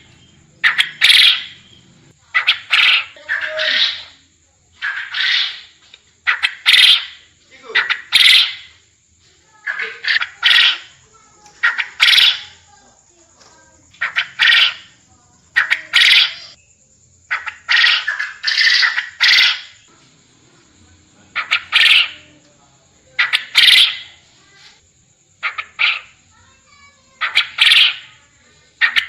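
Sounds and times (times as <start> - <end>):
quail crowing: 0.0 - 1.7, 2.3 - 4.2, 4.8 - 8.8, 9.6 - 11.0, 11.6 - 12.6, 14.0 - 16.6, 17.3 - 19.8, 21.3 - 22.3, 23.2 - 24.2, 25.4 - 26.2, 27.2 - 28.2, 28.8 - 29.0.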